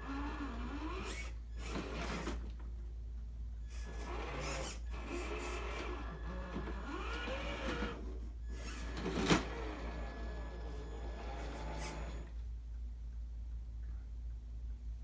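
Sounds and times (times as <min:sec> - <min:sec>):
electric motor whining: 0:03.8 - 0:12.3.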